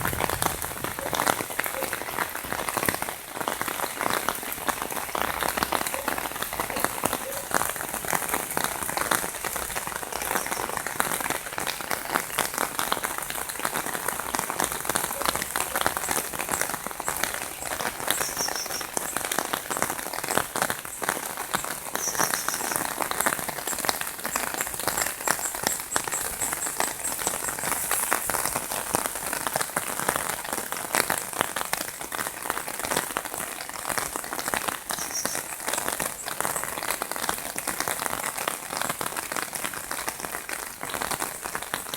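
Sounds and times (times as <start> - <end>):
heavy rain pouring: 0.0 - 41.9.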